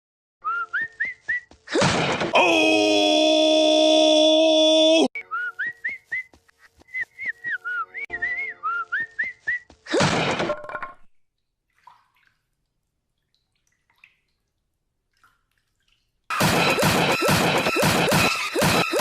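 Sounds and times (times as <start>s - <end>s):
whistled tune: 0.4s - 1.5s, 5.2s - 9.7s
clicking beat: 16.3s - 19.0s.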